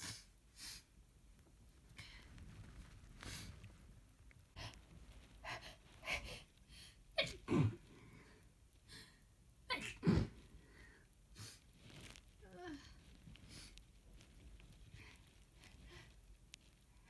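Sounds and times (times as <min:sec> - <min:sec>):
person sneezing: 0:07.2 - 0:07.9, 0:09.7 - 0:10.4.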